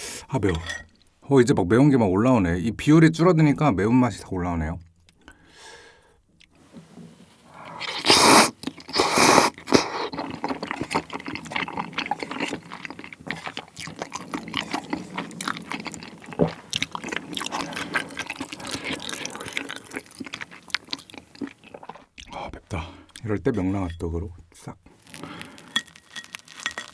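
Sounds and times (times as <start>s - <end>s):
person chewing with sticky smacks: 7.4s - 22.4s.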